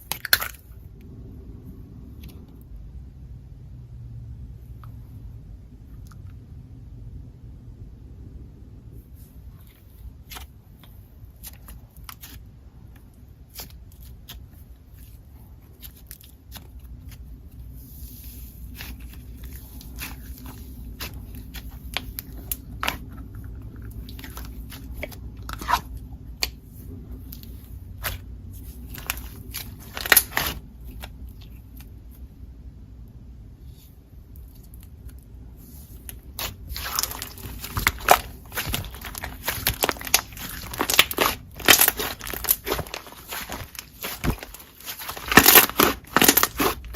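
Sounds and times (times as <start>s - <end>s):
slime squishing and crackling: 0.0s - 0.7s, 9.6s - 32.0s, 34.4s - 46.9s.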